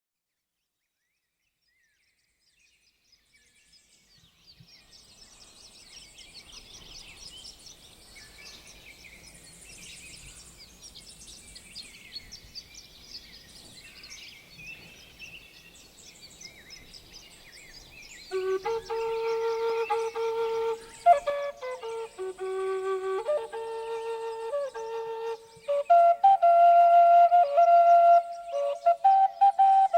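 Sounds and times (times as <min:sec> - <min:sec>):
birds chirping chorus: 0:01.6 - 0:29.9.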